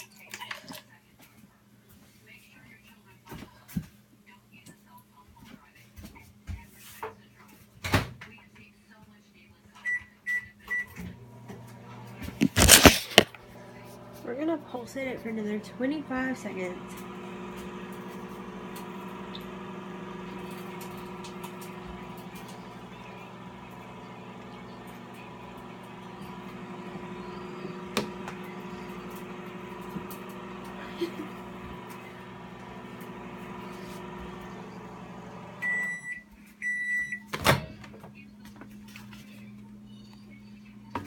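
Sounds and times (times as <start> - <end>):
microwave beeps: 9.8 - 11.2, 14.4 - 37.3
microwave oven humming: 10.0 - 41.0.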